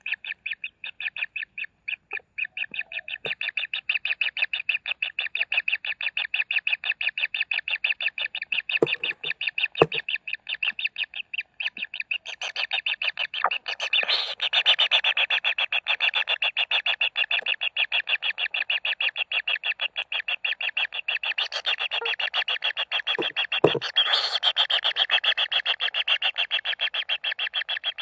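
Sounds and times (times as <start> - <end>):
chicks begging calls: 0.0 - 28.0
sharp knocks: 8.8 - 10.0.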